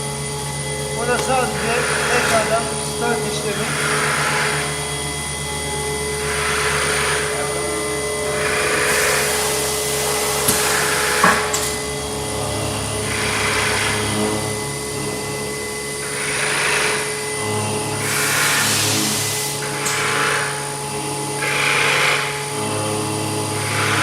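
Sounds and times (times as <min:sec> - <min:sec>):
machine hissing: 0:00.0 - 0:24.0
machine humming: 0:00.0 - 0:24.0
sharp machine clicks: 0:19.5 - 0:20.6.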